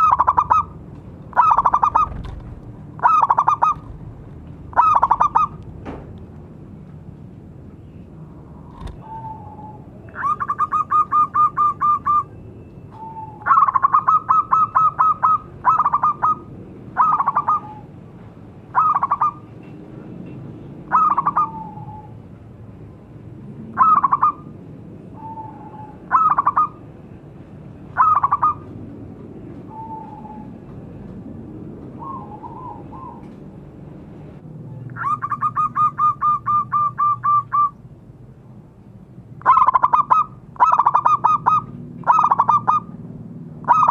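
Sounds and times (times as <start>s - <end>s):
doves cooing: 0.0s - 5.6s, 8.6s - 18.0s, 18.7s - 19.5s, 20.9s - 22.2s, 23.7s - 26.9s, 28.0s - 28.7s, 31.9s - 33.5s, 35.0s - 37.8s, 39.4s - 43.0s.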